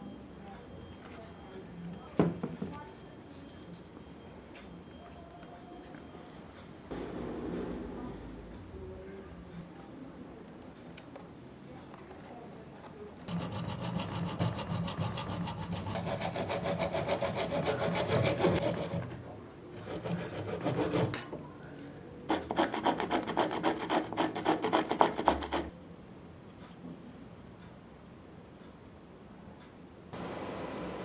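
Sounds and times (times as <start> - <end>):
hand tool rasping workpiece: 13.3 - 21.3, 22.3 - 25.7.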